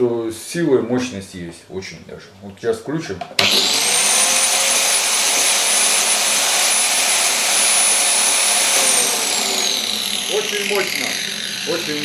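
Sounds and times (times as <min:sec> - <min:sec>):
angle grinder whining: 0:03.4 - 0:12.0.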